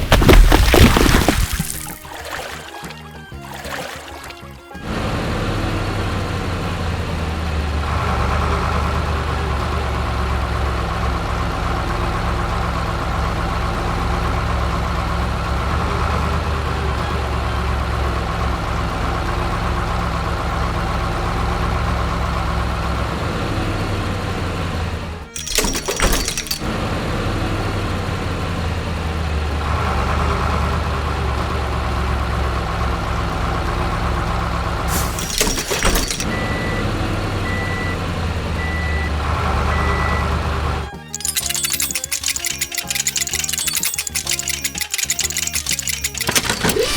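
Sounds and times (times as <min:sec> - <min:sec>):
breaking clatter: 0:00.0 - 0:02.2, 0:25.3 - 0:26.9, 0:34.9 - 0:36.4, 0:41.1 - 0:46.9
background music: 0:01.8 - 0:04.9
heavy vehicle engine running: 0:04.7 - 0:46.9.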